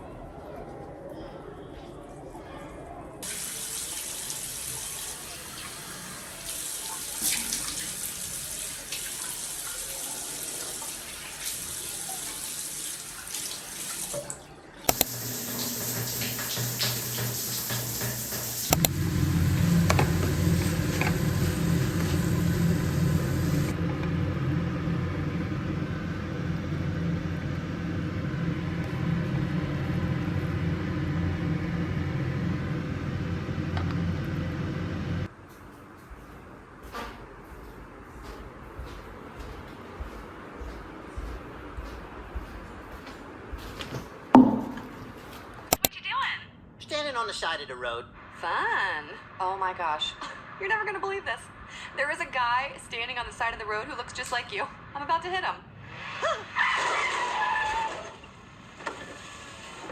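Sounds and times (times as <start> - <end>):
tap water running into sink: 3.2 - 23.8, 43.7 - 45.4
steady low hum: 14.9 - 45.7.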